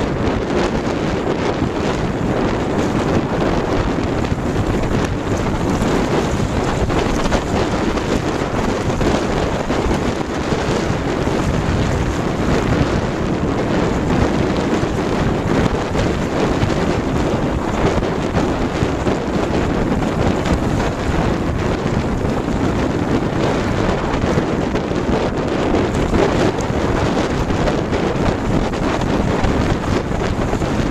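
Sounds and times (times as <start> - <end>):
strong wind on microphone: 0.0 - 30.9
water rushing along hull: 0.0 - 30.9.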